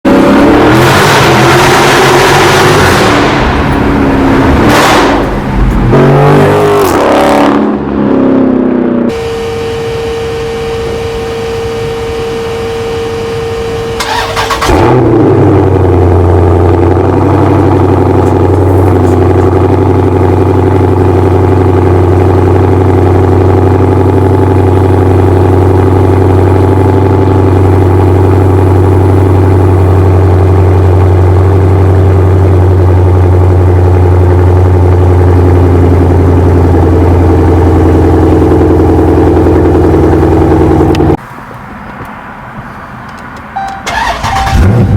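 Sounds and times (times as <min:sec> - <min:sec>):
car engine starting and idling: 0:00.1 - 0:44.9
starter whine: 0:09.1 - 0:41.2, 0:43.6 - 0:44.9.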